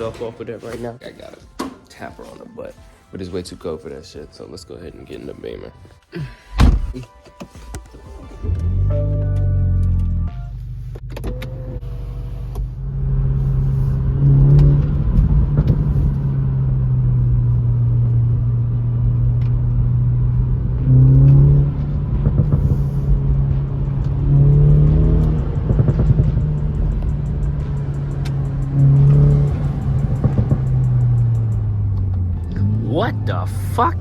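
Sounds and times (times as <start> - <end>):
car engine idling and revving: 8.2 - 34.0.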